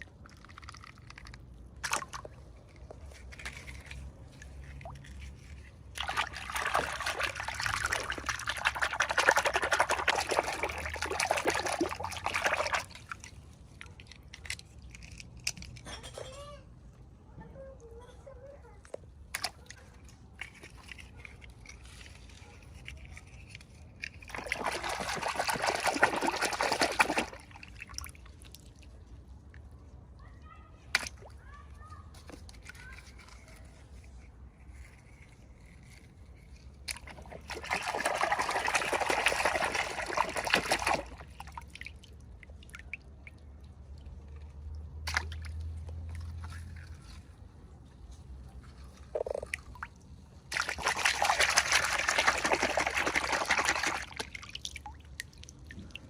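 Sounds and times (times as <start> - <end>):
water trickling: 4.3 - 13.9, 48.9 - 56.0.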